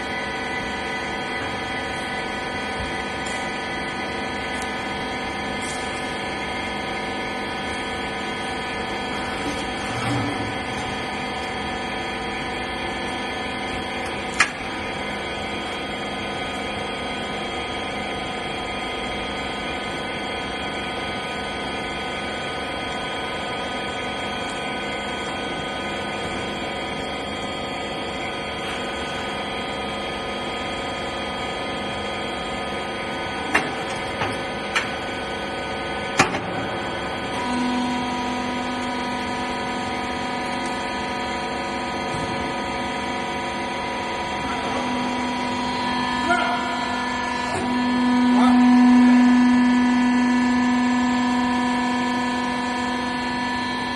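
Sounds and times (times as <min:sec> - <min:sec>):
baling machine hum: 0:00.0 - 0:53.9.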